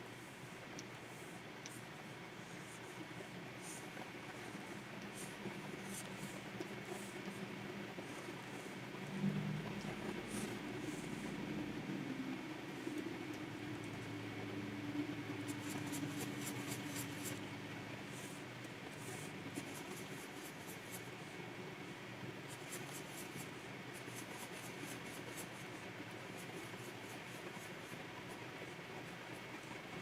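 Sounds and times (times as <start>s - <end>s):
stylus scratching on pen display: 0.2s - 12.1s, 14.9s - 17.4s, 18.1s - 21.1s, 22.5s - 28.4s.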